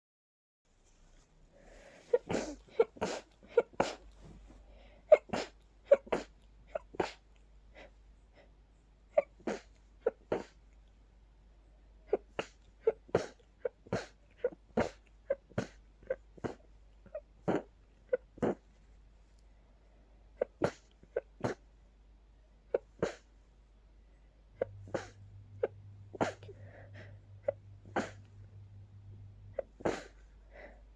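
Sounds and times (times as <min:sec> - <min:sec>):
person sneezing stifled: 0:01.9 - 0:04.4, 0:05.1 - 0:07.3, 0:09.2 - 0:10.6, 0:12.1 - 0:18.6, 0:20.4 - 0:21.7, 0:22.7 - 0:23.3, 0:24.6 - 0:28.6, 0:29.4 - 0:30.8.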